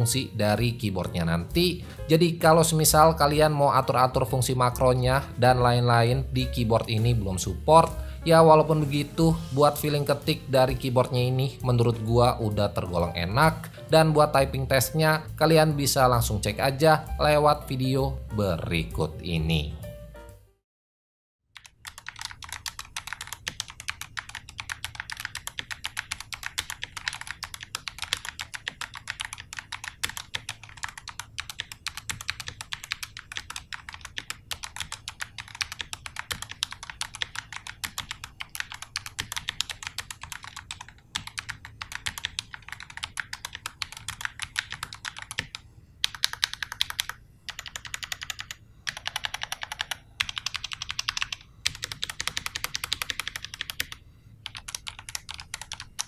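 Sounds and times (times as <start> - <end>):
mechanical keyboard typing: 21.6 - 56.0.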